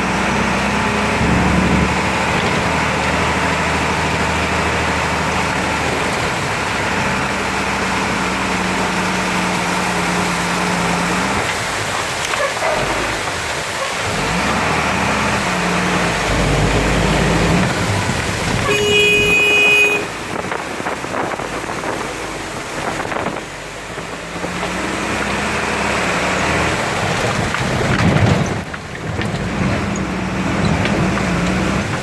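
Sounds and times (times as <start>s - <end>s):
steady rain: 0.0s - 32.0s
vehicles running on road: 0.0s - 32.0s
vehicle horn toot: 18.6s - 20.4s.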